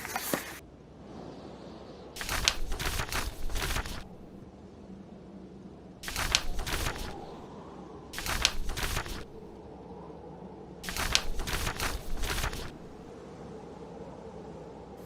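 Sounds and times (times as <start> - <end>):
book pages turning: 0.0 - 0.6, 2.2 - 4.4, 6.0 - 7.4, 8.2 - 9.5, 10.8 - 13.1
blizzard wind: 0.0 - 15.0
fireplace crackling: 6.0 - 7.4, 10.8 - 13.1.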